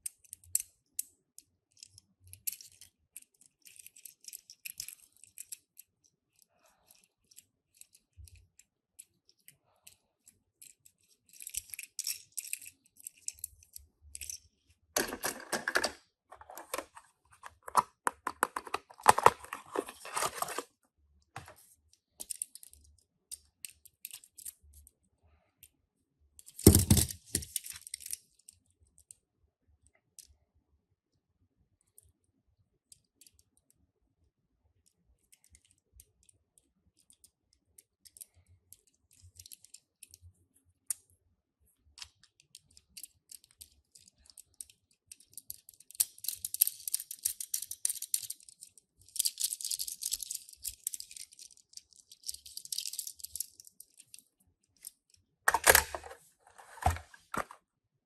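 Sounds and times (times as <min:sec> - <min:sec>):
toy cars clicking and rattling: 0:00.0 - 0:20.7, 0:22.2 - 0:24.9, 0:26.4 - 0:29.2, 0:37.0 - 0:40.3, 0:42.0 - 0:57.6
packaging rustling and tearing: 0:16.4 - 0:20.7.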